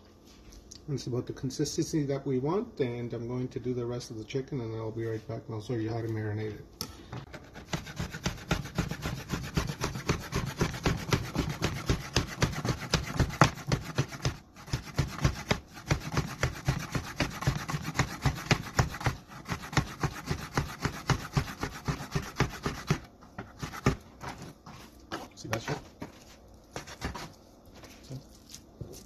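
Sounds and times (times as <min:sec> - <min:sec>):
knife sawing through raw chicken: 0:07.4 - 0:24.5.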